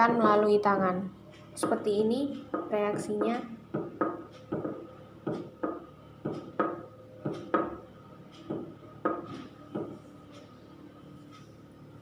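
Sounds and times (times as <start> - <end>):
foot knocking against bed: 2.5 - 7.8, 8.5 - 10.0.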